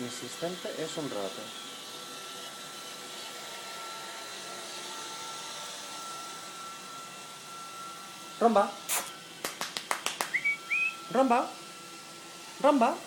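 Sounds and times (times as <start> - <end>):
robot vacuum whirring: 0.0 - 9.4, 10.2 - 13.0
thin high tone: 10.2 - 11.4.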